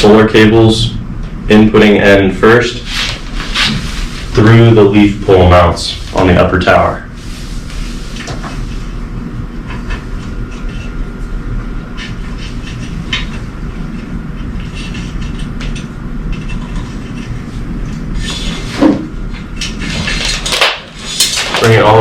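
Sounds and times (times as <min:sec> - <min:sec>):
low rumbling noise: 0:00.0 - 0:22.0.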